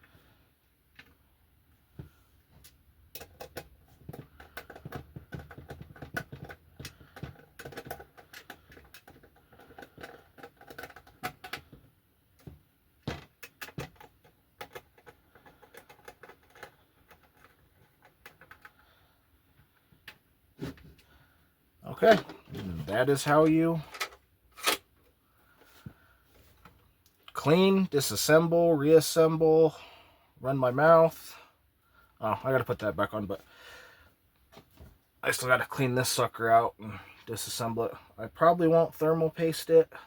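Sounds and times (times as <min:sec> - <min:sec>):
screwdriver clicking and scraping metal: 0:23.9 - 0:24.8.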